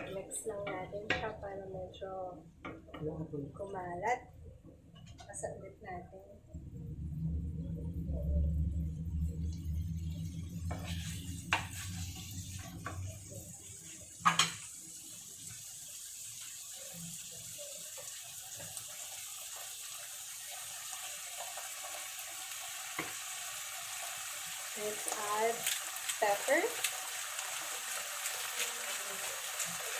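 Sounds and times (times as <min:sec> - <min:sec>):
food sizzling in oil: 0:09.6 - 0:29.9.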